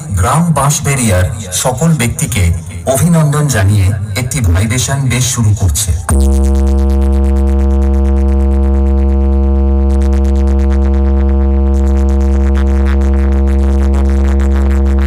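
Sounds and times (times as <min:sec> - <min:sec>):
deep synthesized bass note: 0:01.2 - 0:15.0.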